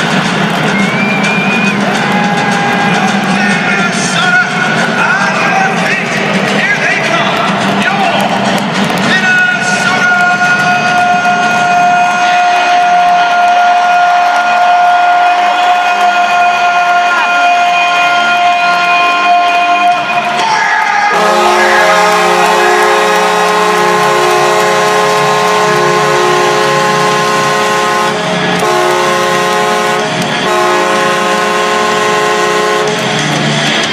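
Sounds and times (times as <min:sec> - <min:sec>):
crowd noise: 0:00.0 - 0:33.9
goal horn blast: 0:21.1 - 0:33.1.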